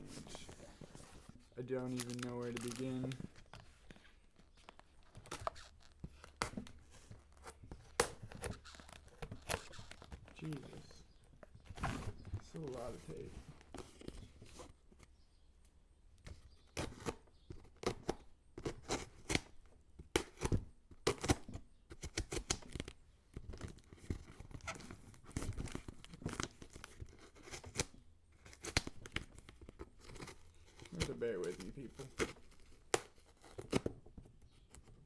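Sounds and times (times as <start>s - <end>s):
packing tape ripping off cardboard: 5.1s - 10.4s, 16.7s - 22.9s, 23.6s - 34.0s.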